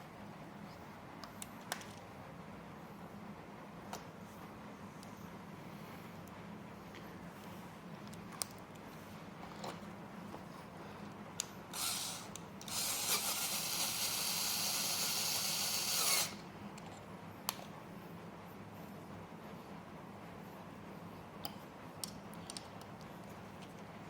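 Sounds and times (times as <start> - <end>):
power tool driving screw: 11.8 - 16.4.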